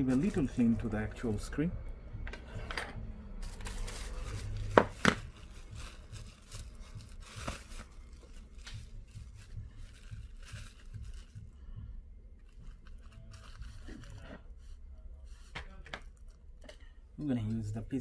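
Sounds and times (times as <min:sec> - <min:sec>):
scratching and rubbing strokes: 0:03.4 - 0:11.6, 0:12.4 - 0:15.5.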